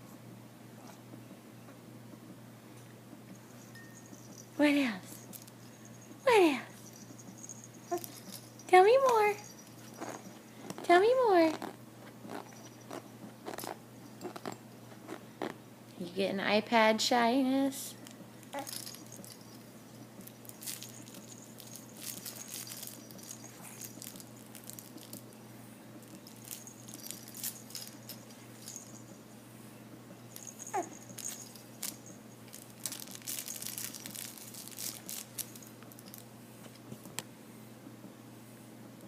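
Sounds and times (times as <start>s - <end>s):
faint steady hum: 0.0s - 39.0s
small rustles: 3.3s - 15.6s, 18.0s - 25.4s, 26.0s - 29.2s, 30.3s - 37.2s.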